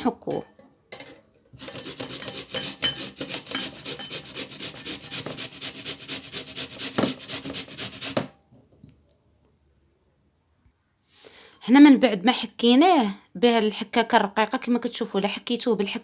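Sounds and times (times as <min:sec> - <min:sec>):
turnip grating on hand grater: 0:01.6 - 0:08.3.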